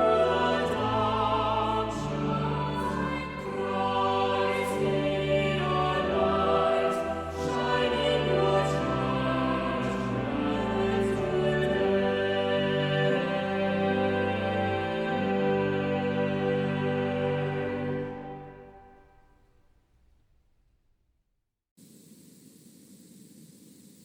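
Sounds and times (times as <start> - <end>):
voices singing worship song: 0.0 - 18.9.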